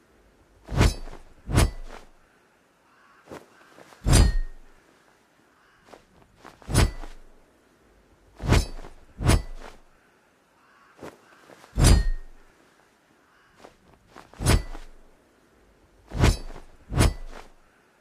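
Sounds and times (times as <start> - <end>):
blade striking with metallic ring: 0.8 - 2.0, 4.1 - 4.7, 6.7 - 7.2, 8.5 - 9.8, 11.8 - 12.4, 14.4 - 15.0, 16.2 - 17.6.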